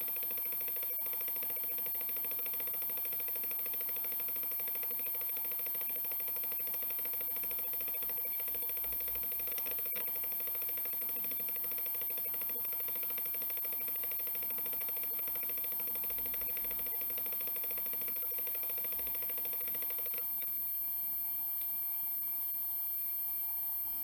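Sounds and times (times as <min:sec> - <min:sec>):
hard drive whine: 0:00.0 - 0:24.0.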